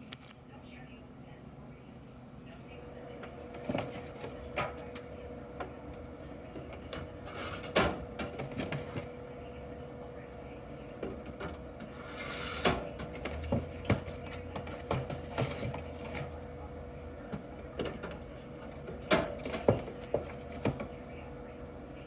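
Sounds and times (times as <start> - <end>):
drink cans clunking in metal column: 11.2 - 16.3, 17.7 - 20.9.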